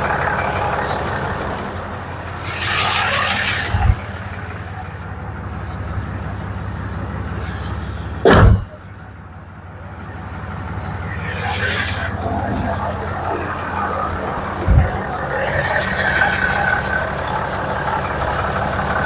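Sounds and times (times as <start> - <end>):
diesel engine idling: 0.0 - 19.0
loud clunk: 8.2 - 9.0.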